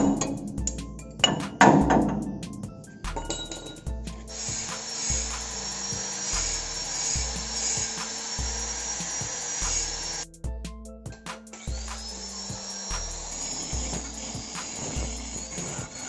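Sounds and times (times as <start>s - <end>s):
background music with bass beat: 0.0s - 16.0s
hand tool rasping metal: 3.2s - 10.2s, 11.5s - 16.0s.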